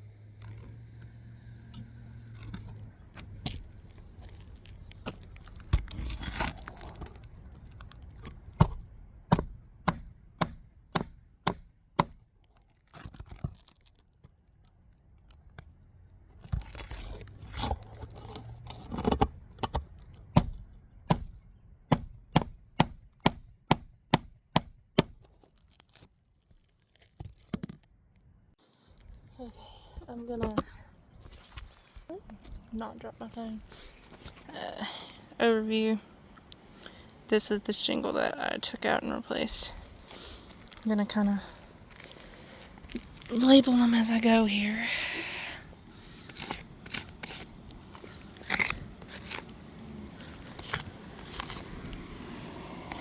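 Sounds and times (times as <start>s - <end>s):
shingles scraping and rustling: 2.4s - 8.8s, 16.4s - 20.6s, 46.1s - 49.6s
hammer striking roofing nails: 8.6s - 12.2s, 20.3s - 25.2s.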